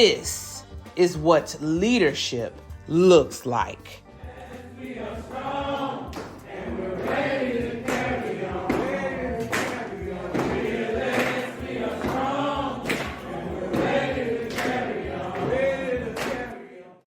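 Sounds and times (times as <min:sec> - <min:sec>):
group singing a chant: 0:04.1 - 0:17.0
sharp percussive hits: 0:05.6 - 0:16.4.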